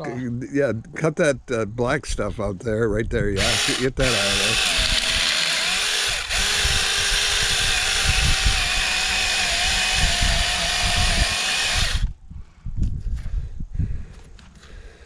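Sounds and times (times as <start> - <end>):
small chainsaw cutting: 3.4 - 12.1.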